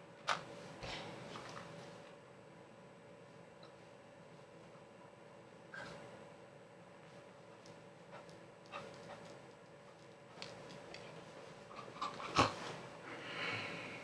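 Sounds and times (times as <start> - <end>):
catching breaths: 13.0 - 14.0.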